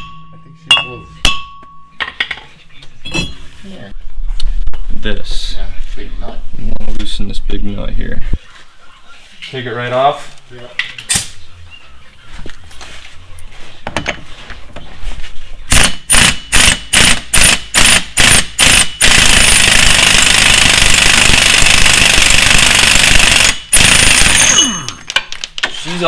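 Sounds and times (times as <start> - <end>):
air impact wrench hammering: 15.7 - 25.4.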